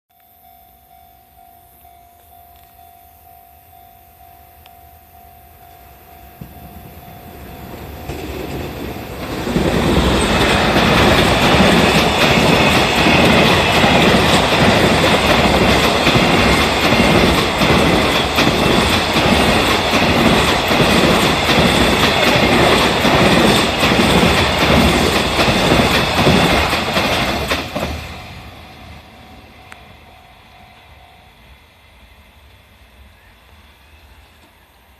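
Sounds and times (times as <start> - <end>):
crossing warning bell ringing: 0.1 - 31.7
train wheels clattering on rails: 6.4 - 29.0.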